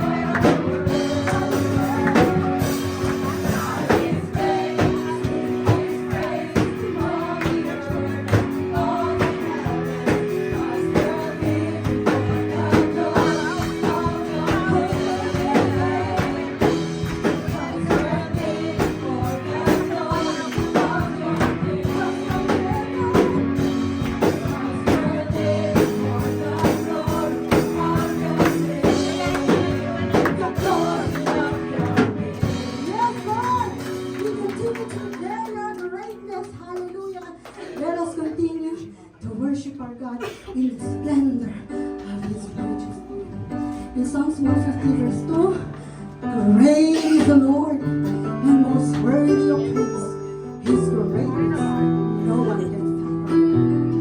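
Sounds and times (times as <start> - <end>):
voices singing: 0.0 - 34.2
worship band playing: 0.0 - 39.0, 40.2 - 54.0.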